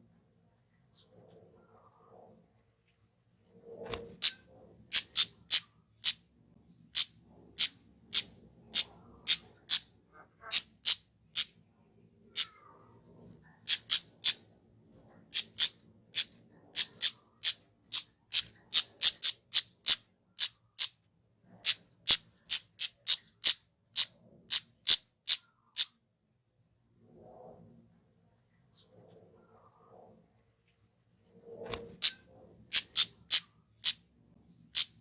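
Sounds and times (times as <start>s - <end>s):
bird calling high tsit notes: 5.0s - 6.2s, 13.7s - 14.4s, 32.8s - 34.0s, 34.8s - 35.0s.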